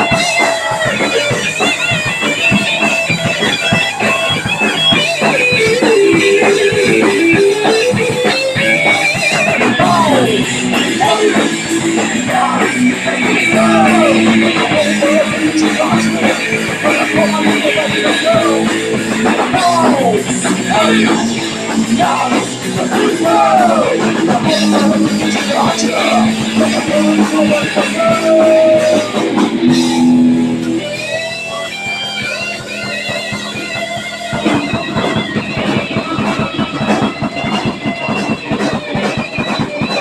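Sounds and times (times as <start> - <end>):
distorted electric guitar: 0.0 - 40.0
drums: 0.0 - 40.0.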